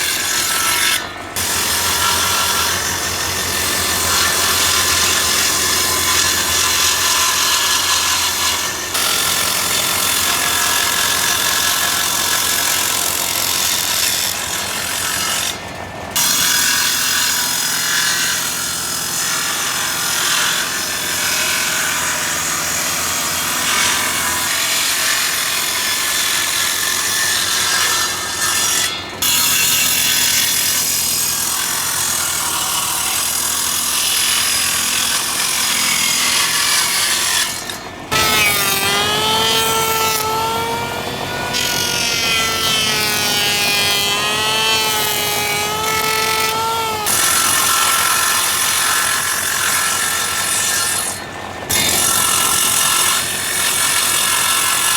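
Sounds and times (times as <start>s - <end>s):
tool rasping on wood: 38.1s - 54.9s.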